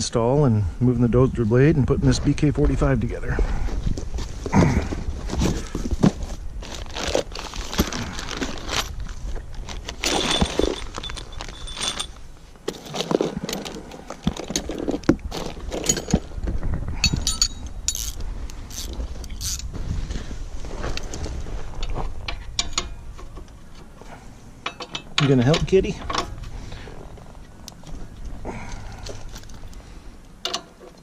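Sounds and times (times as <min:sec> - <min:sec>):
steady low rumble: 0:00.0 - 0:30.4
metallic rings: 0:10.0 - 0:12.2, 0:17.0 - 0:19.7, 0:22.3 - 0:23.2
metal tools clinking: 0:10.0 - 0:16.3, 0:17.0 - 0:19.7, 0:22.3 - 0:23.5, 0:24.6 - 0:27.1, 0:28.7 - 0:29.8.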